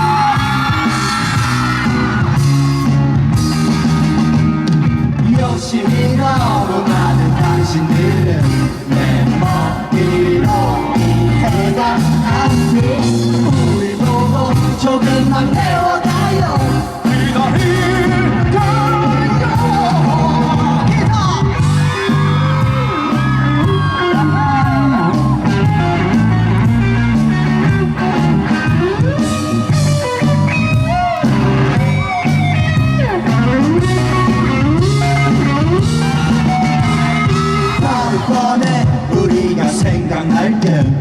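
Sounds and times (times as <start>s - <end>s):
electric guitar lead: 0.0s - 39.2s
bass and drums: 0.0s - 41.0s.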